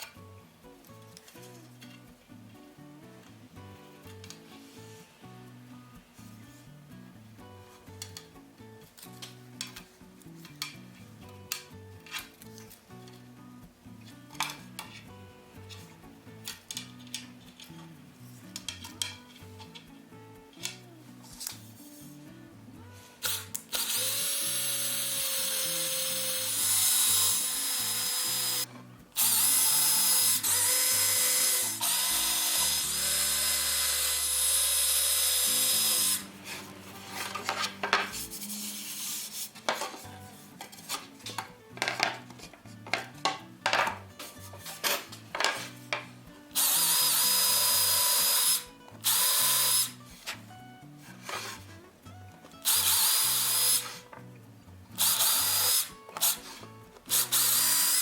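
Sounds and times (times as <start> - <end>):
background music: 0.0 - 58.0
electric power tool whining: 23.2 - 37.6, 46.6 - 50.0, 52.6 - 54.0, 55.0 - 58.0.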